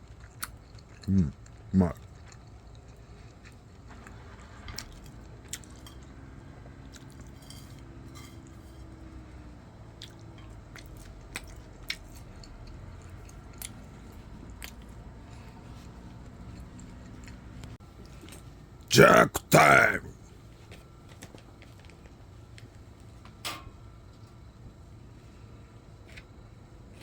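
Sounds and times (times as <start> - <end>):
person chewing food: 0.0 - 4.0, 4.8 - 6.2, 10.0 - 17.5
low background noise: 0.0 - 27.0.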